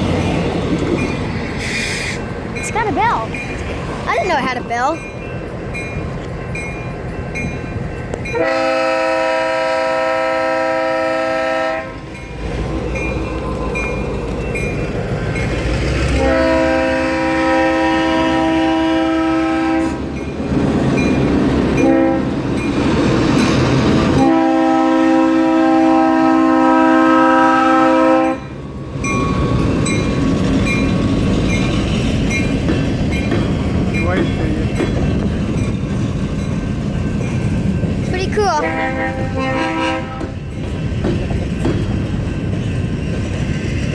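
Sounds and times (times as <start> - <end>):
low rumble of locomotive: 0.0 - 43.9
locomotive bell ringing: 2.2 - 9.1, 12.1 - 16.6, 28.2 - 43.9
locomotive air horn chord: 8.3 - 12.0, 16.1 - 20.0, 21.8 - 22.3, 24.2 - 28.5, 38.6 - 40.4
multi-note air horn blast: 24.2 - 28.4, 38.6 - 40.3.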